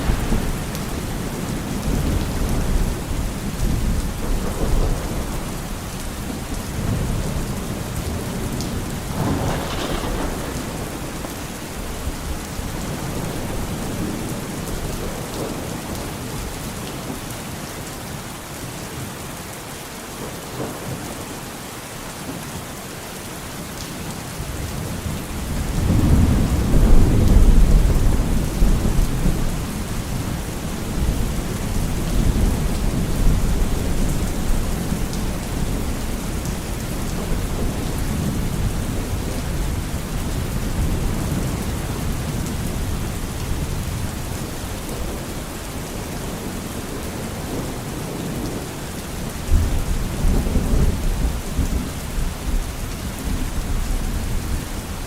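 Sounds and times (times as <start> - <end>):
thunder crack: 0.0 - 3.0, 9.1 - 12.0
deep rolling thunder rumble: 0.0 - 16.1, 25.0 - 48.7
heavy rain hissing: 0.0 - 17.6.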